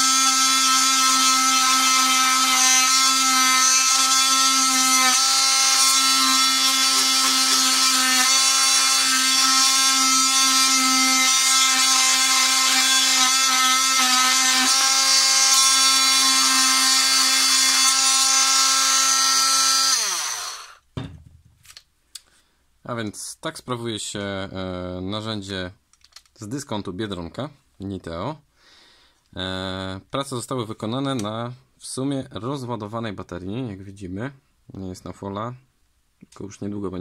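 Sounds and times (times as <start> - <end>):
oscillating multi-tool cutting wood: 0.0 - 20.8.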